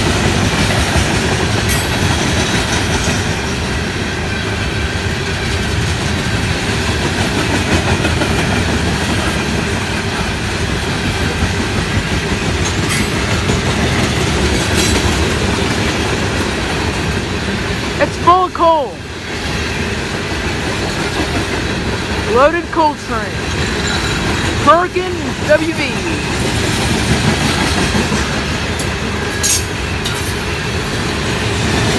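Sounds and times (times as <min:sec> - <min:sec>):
wheels clacking over rail joints: 0:05.5 - 0:18.0
train rumbling past: 0:19.0 - 0:22.3, 0:23.2 - 0:24.6, 0:26.1 - 0:31.9.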